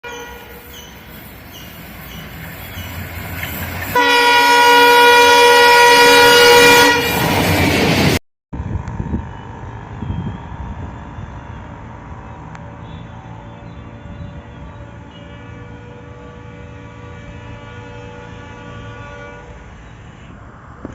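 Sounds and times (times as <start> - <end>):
train horn blast: 0.0 - 1.2, 3.9 - 7.4, 12.8 - 20.4
diesel locomotive rumble: 0.0 - 20.9.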